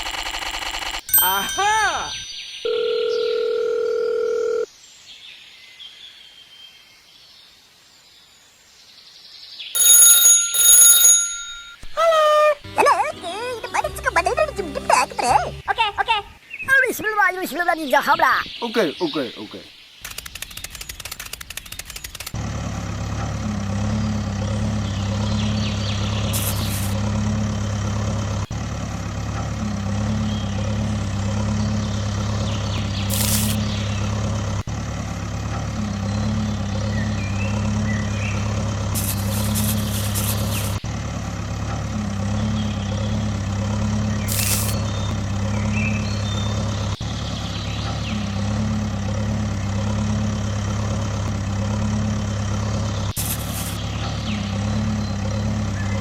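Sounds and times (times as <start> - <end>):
tractor engine droning: 21.9 - 56.0
brief sharp high sounds: 44.3 - 44.8.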